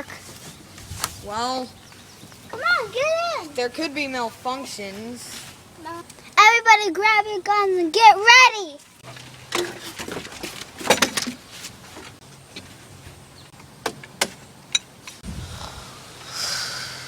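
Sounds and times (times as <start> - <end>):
handling noise: 8.8 - 15.2.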